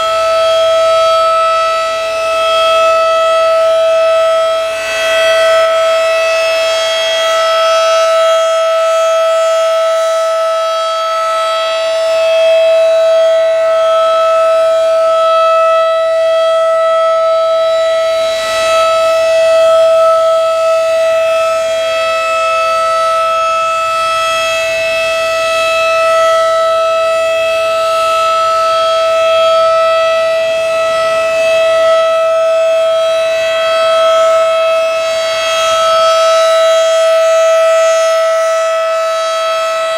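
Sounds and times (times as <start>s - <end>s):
warning siren steady tone: 0.0s - 39.9s.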